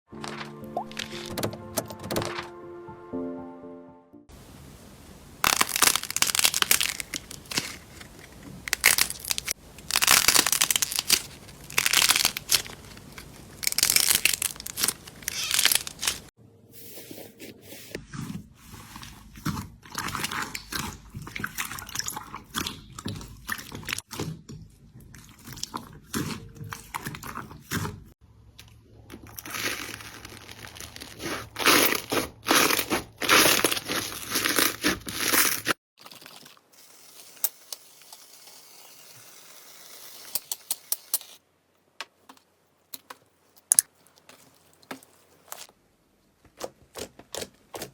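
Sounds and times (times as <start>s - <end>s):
slime squishing and crackling: 5.4s - 16.3s, 29.1s - 36.7s.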